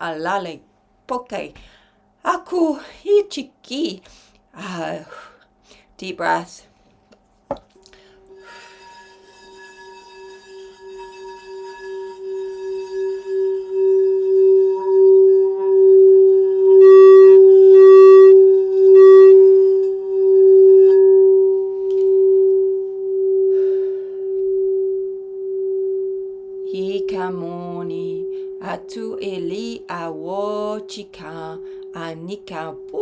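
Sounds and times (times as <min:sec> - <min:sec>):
crystal singing bowl ringing: 0:08.0 - 0:33.0.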